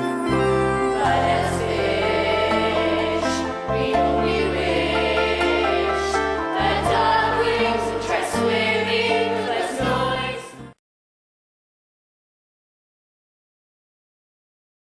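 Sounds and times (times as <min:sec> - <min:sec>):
instrumental accompaniment with bass: 0:00.0 - 0:10.7
cast singing in chorus: 0:00.6 - 0:10.6.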